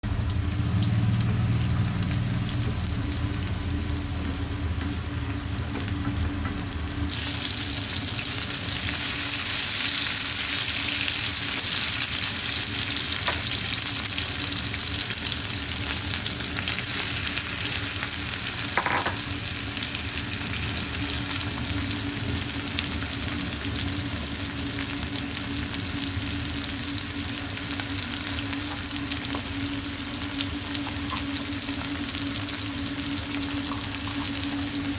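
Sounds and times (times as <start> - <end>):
food sizzling in a pan: 6.9 - 34.9.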